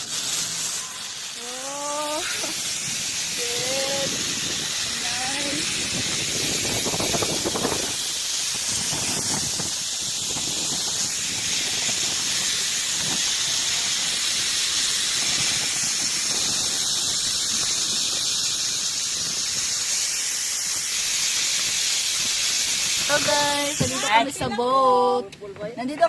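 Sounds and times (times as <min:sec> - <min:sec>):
steady high-pitched hiss: 0:00.0 - 0:26.0.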